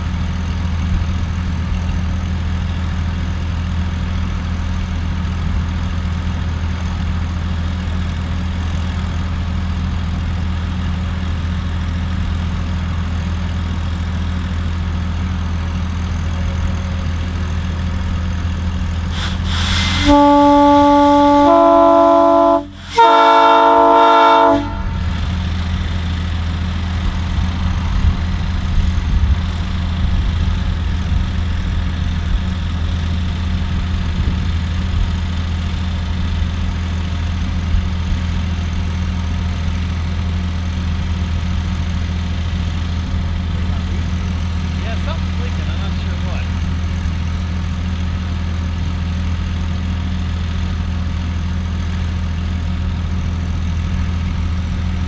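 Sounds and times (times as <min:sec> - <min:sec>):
engine hum: 0:00.0 - 0:55.0
hiss of air: 0:19.1 - 0:20.6
locomotive air horn blasts: 0:19.1 - 0:25.8.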